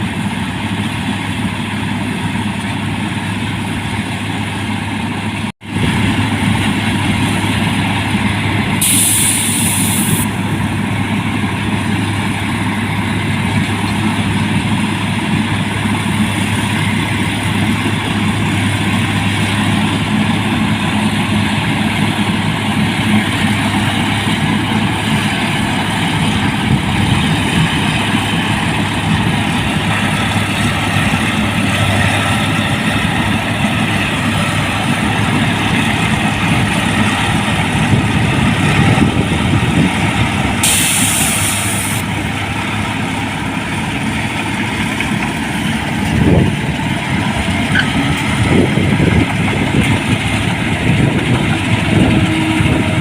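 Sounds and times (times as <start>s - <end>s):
harvester engine running: 0.0s - 53.0s
short high hiss: 8.8s - 10.3s, 40.6s - 42.1s.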